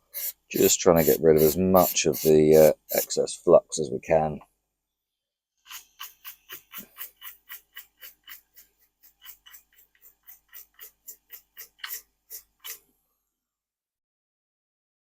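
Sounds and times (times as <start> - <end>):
brush scrubbing circuit board: 0.0 - 3.2, 5.7 - 12.8.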